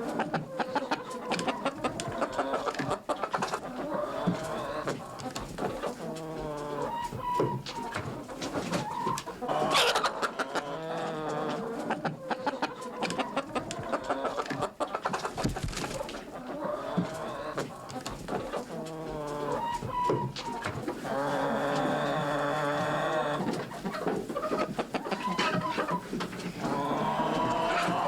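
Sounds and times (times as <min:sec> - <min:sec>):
birds scratching and rustling: 0:00.0 - 0:28.0
chickens clucking: 0:00.0 - 0:28.0.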